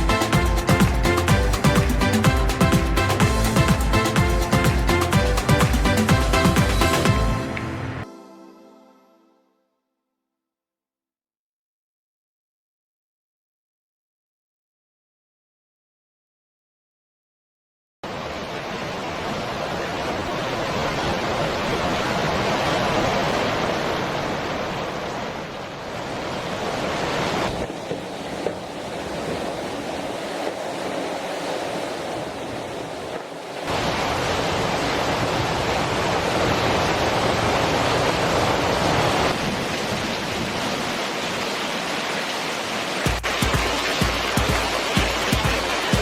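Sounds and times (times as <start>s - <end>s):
heavy rain: 0.0s - 8.0s, 18.0s - 46.0s
running rainwater: 0.0s - 8.0s, 18.0s - 46.0s.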